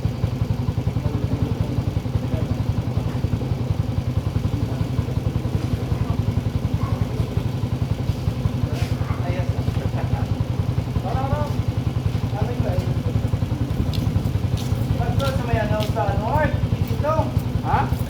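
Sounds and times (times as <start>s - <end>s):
scooter engine idling: 0.0s - 18.0s.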